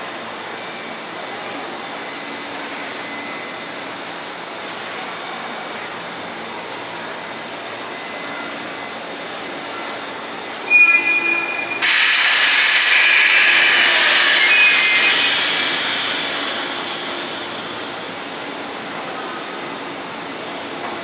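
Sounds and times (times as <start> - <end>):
train rushing past: 10.6 - 20.2
wheel squeal: 10.7 - 18.6.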